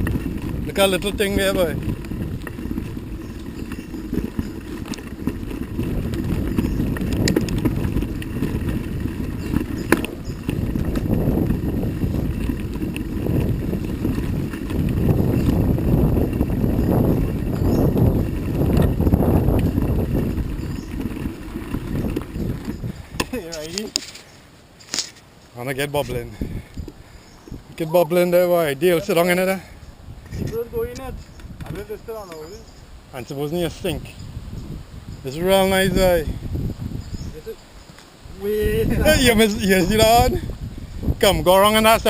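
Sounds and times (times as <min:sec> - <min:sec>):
wind buffeting microphone: 0:00.0 - 0:24.4, 0:25.6 - 0:42.0
bike clicks and rattles: 0:00.0 - 0:27.6, 0:28.8 - 0:32.8.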